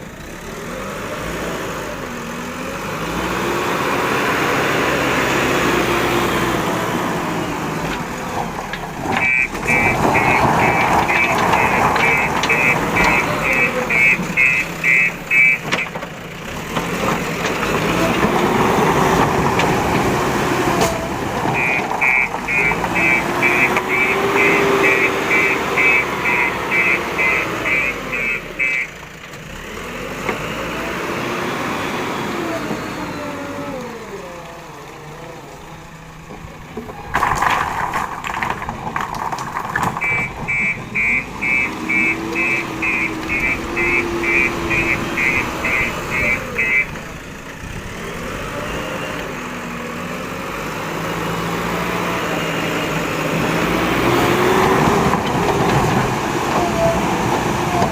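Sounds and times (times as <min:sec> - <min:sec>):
backhoe engine running: 0:00.0 - 0:57.9
machinery rattling and knocking: 0:06.3 - 0:29.5, 0:36.0 - 0:48.4, 0:53.5 - 0:57.9
reversing alarm beeping: 0:09.2 - 0:15.9, 0:21.6 - 0:28.9, 0:40.0 - 0:47.0.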